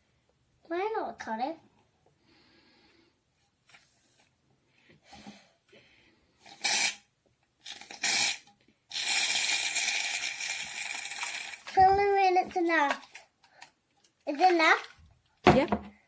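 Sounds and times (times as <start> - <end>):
aerosol can spraying: 6.5 - 7.0, 7.7 - 11.8.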